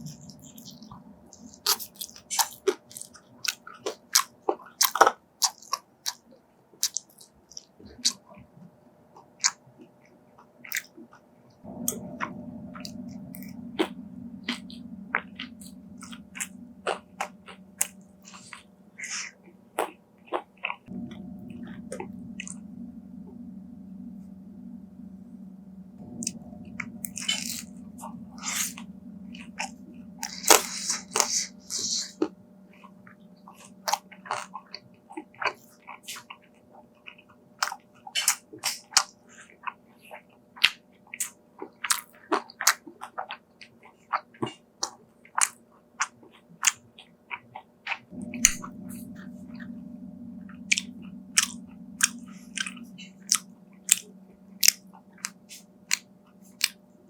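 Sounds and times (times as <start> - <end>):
chewing clicks: 50.6 - 56.8.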